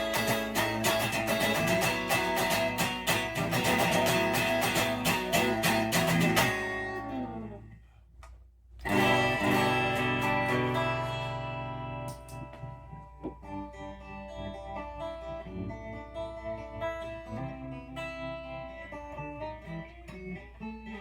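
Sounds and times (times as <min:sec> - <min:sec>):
ringing guitar chord: 0:08.9 - 0:19.6.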